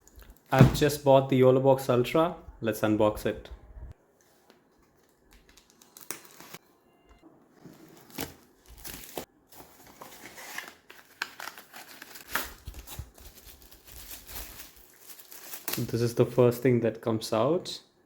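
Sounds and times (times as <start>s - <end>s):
wrapping rustling and tearing: 8.0s - 16.1s.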